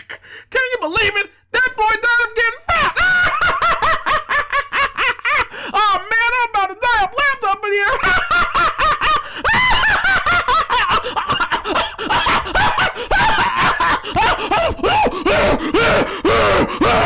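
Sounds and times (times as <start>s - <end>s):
man laughing hard: 2.6s - 5.9s, 7.9s - 17.0s.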